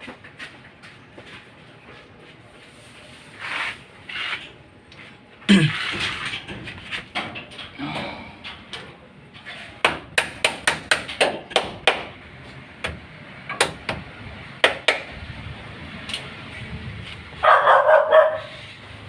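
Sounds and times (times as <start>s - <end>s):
dog barking: 17.4s - 18.6s.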